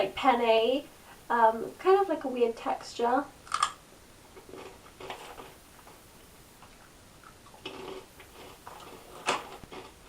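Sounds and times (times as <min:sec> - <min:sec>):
crunchy snack being chewed: 0:03.5 - 0:03.8, 0:06.6 - 0:10.0.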